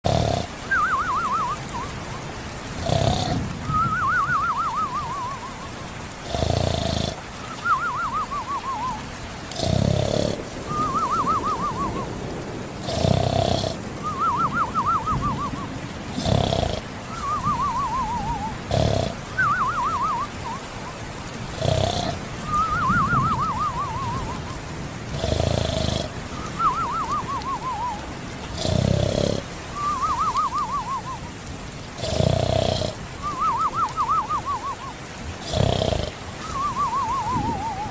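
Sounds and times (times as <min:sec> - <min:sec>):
cat snoring: 0:00.0 - 0:00.5, 0:02.8 - 0:03.4, 0:06.2 - 0:07.2, 0:09.6 - 0:10.4, 0:12.8 - 0:13.8, 0:16.2 - 0:16.8, 0:18.7 - 0:19.2, 0:21.6 - 0:22.2, 0:25.1 - 0:26.1, 0:28.6 - 0:29.4, 0:32.0 - 0:33.0, 0:35.4 - 0:36.1
comic rasping snore: 0:00.0 - 0:00.7, 0:02.8 - 0:03.8, 0:06.2 - 0:07.2, 0:09.5 - 0:11.2, 0:12.8 - 0:14.8, 0:16.1 - 0:19.8, 0:21.5 - 0:24.2, 0:25.1 - 0:26.7, 0:27.7 - 0:29.5, 0:32.0 - 0:33.8, 0:35.4 - 0:37.9
high wavering whistle: 0:00.7 - 0:01.9, 0:03.7 - 0:05.7, 0:07.5 - 0:09.0, 0:10.7 - 0:12.0, 0:14.0 - 0:15.7, 0:17.1 - 0:18.5, 0:19.4 - 0:20.6, 0:22.5 - 0:24.4, 0:26.4 - 0:28.0, 0:29.8 - 0:31.2, 0:33.2 - 0:34.9, 0:36.4 - 0:37.9.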